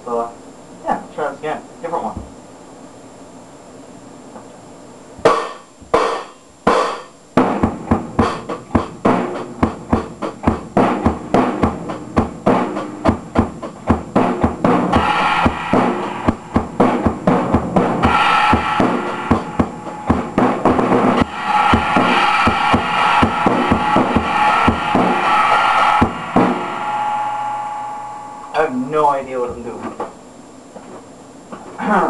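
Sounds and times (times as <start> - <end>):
drum kit beat: 5.2 - 29.0
bright ringing: 18.0 - 29.8.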